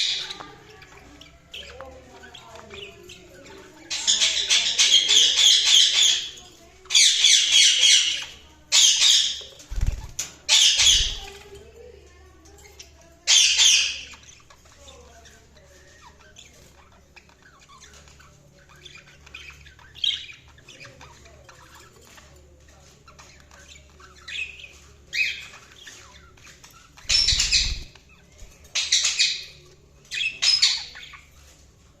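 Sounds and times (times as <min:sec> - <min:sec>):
budgerigars squawking harshly: 0:00.0 - 0:11.3, 0:23.9 - 0:31.2
budgerigars chattering: 0:00.0 - 0:11.5, 0:12.8 - 0:32.0.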